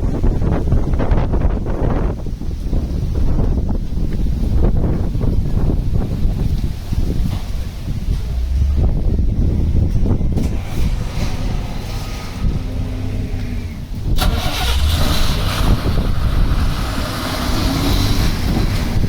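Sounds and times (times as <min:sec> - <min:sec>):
vehicle engine running: 0:00.0 - 0:19.0
wind buffeting microphone: 0:00.0 - 0:19.0
hissing rush: 0:07.0 - 0:19.0.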